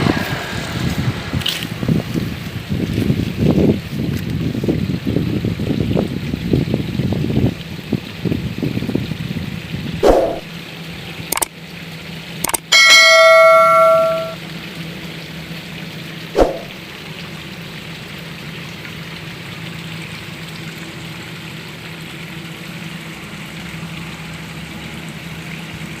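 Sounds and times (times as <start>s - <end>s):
sharp clicks: 11.3s - 11.5s, 12.4s - 12.7s
bell-like ding: 12.5s - 14.4s.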